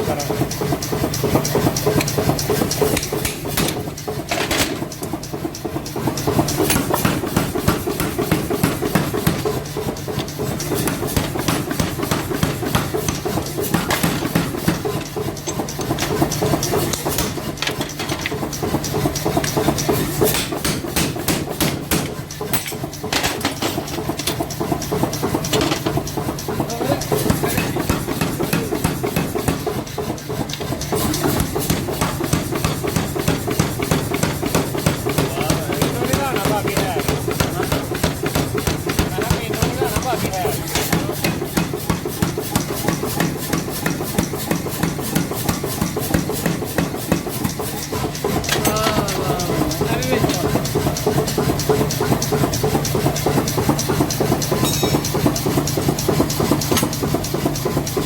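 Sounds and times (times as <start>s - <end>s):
machinery humming: 0.0s - 58.0s
hammer strikes on metal: 6.6s - 16.3s, 20.2s - 23.8s, 27.2s - 29.8s, 30.6s - 51.8s, 54.3s - 57.5s.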